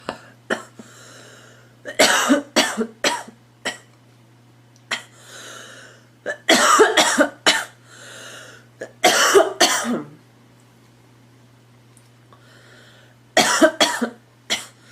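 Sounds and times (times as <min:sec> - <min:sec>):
girl coughing: 0:01.9 - 0:03.9, 0:06.3 - 0:07.8, 0:08.8 - 0:10.2, 0:13.4 - 0:14.8.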